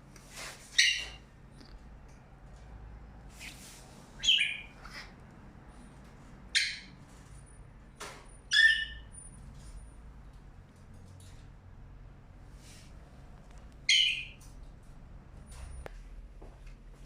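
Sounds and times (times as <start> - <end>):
parrot squawking: 0.8 - 1.2, 4.2 - 5.1, 6.5 - 6.9, 8.5 - 9.1, 13.9 - 14.4
soft parrot calls: 4.2 - 5.2, 13.9 - 14.4.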